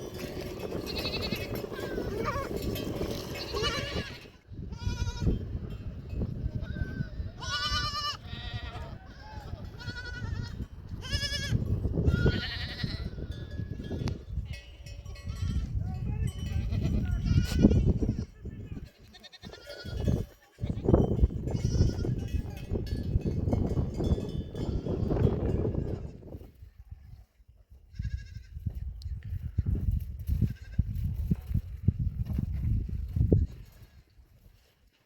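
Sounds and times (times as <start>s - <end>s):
sheep and goats bleating: 0.0s - 22.7s, 24.0s - 26.2s, 27.8s - 28.6s, 30.3s - 31.0s.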